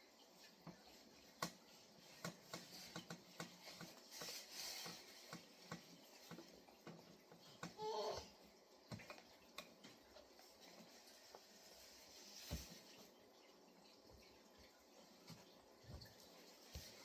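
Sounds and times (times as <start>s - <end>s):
cloth wiping fridge door: 1.8s - 6.2s, 10.4s - 13.1s.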